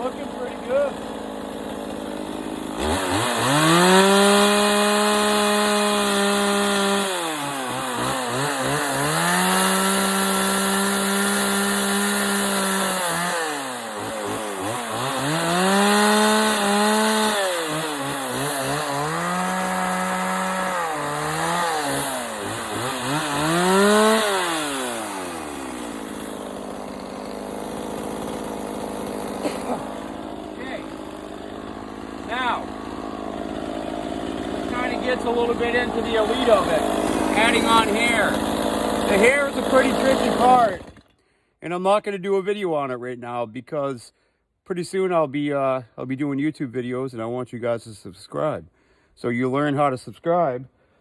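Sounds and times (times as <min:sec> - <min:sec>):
chainsaw revving: 0:00.0 - 0:41.2.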